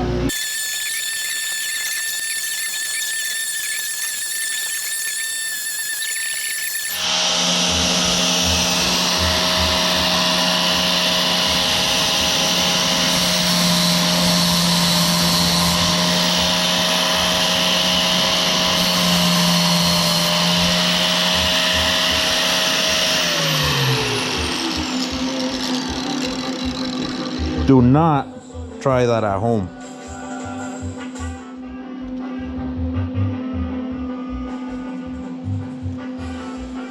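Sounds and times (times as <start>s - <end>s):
power tool motor running: 0.3s - 27.7s.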